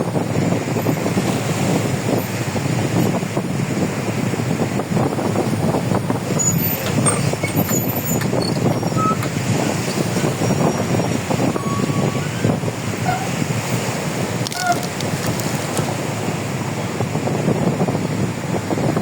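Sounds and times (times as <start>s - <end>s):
diesel engine running: 0.0s - 19.0s
wind on microphone: 0.0s - 19.0s.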